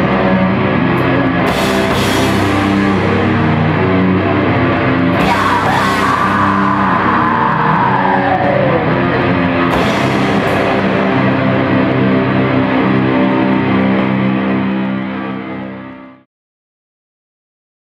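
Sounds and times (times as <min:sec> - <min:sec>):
distorted electric guitars and bass: 0:00.0 - 0:16.3.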